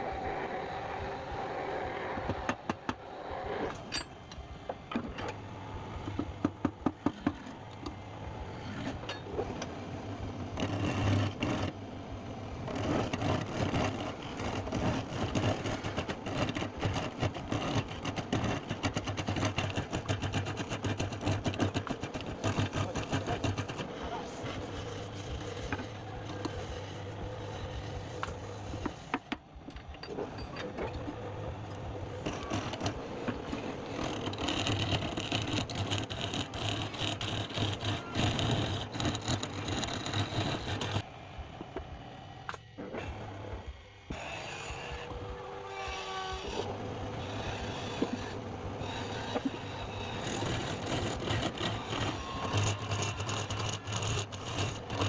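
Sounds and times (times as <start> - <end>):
tool ticking and scraping wood: 6.0 - 8.0, 10.5 - 11.8, 12.6 - 41.1, 46.0 - 55.0
lathe motor hum: 7.6 - 29.1, 31.0 - 42.2, 43.1 - 55.0.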